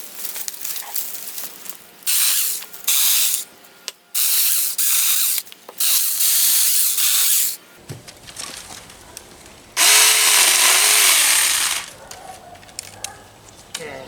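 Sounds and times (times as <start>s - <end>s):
chainsaw cutting logs: 9.8s - 11.9s.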